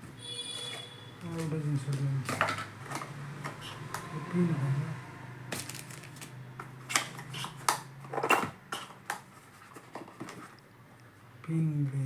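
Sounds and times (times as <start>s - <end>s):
packaging clicks and rustles: 5.5s - 7.8s.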